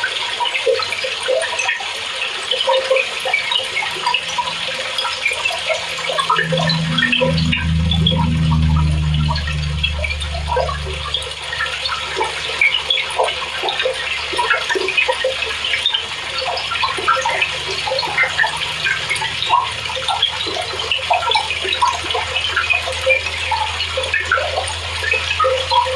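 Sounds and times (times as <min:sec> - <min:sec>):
low steady hum: 0:04.0 - 0:12.1.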